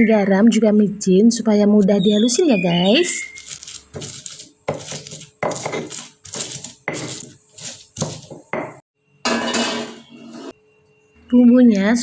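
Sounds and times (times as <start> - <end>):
mortar and pestle grinding: 3.1 - 8.8.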